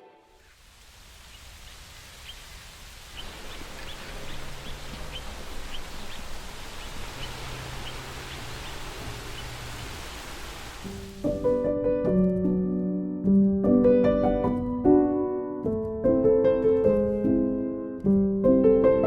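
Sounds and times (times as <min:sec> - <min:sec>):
rustling hiss: 0:00.3 - 0:11.5.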